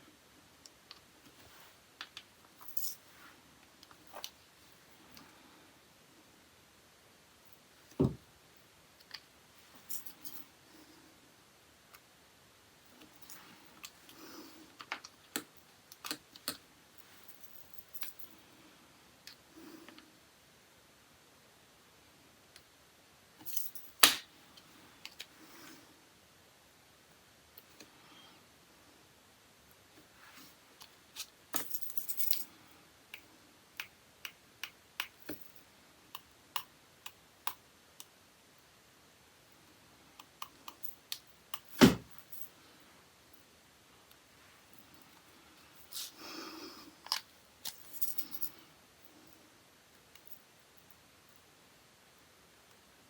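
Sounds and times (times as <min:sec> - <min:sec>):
small clicks of nail-art tools: 0:33.1 - 0:38.2.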